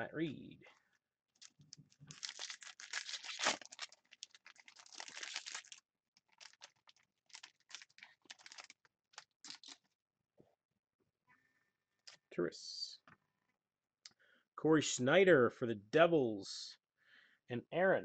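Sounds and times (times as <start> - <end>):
wrapper crinkling and tearing: 1.4 - 9.9.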